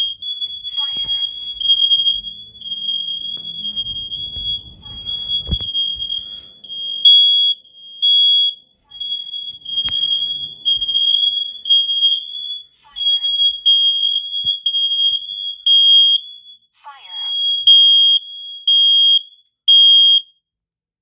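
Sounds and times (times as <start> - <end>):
smoke alarm high-pitched tone: 0.0 - 20.3.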